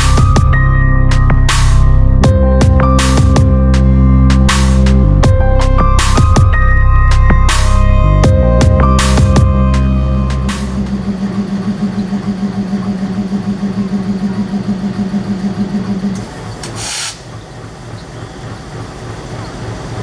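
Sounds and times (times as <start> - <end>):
low rumble: 0.0 - 16.1
diesel locomotive engine throbbing: 0.0 - 20.0
brief hiss: 16.6 - 17.3.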